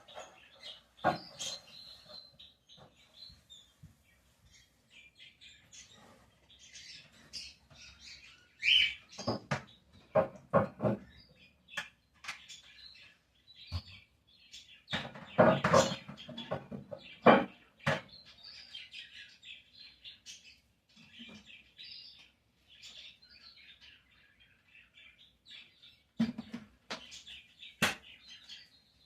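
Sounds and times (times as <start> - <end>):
small birds chirping: 0.0 - 29.0
knocks and clatters: 9.1 - 11.2, 14.9 - 18.2.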